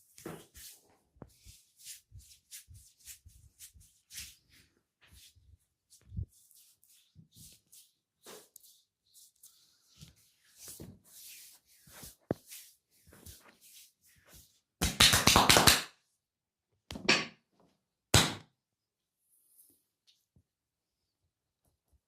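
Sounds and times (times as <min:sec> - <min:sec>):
hands rubbing skin: 0:00.4 - 0:15.7
hands slapping skin: 0:14.8 - 0:16.0, 0:18.2 - 0:18.5.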